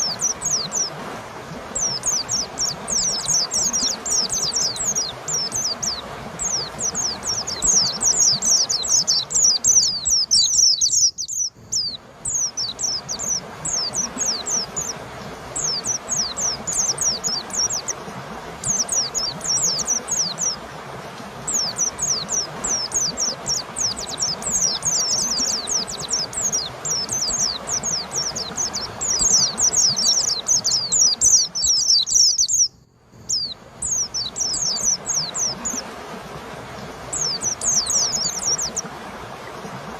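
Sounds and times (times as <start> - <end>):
bird singing rapid high chirps: 1.8 - 15.0, 21.5 - 35.8.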